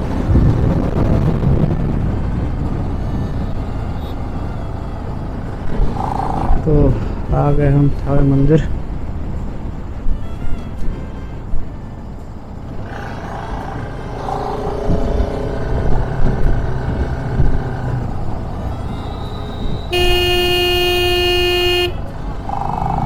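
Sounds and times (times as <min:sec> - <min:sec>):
road traffic noise: 0:00.0 - 0:23.0
vehicle horn: 0:18.8 - 0:22.3.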